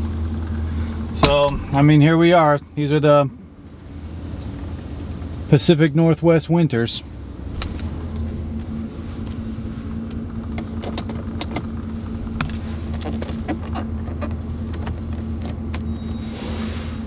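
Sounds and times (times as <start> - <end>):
vehicle engine humming: 0.0 - 2.2.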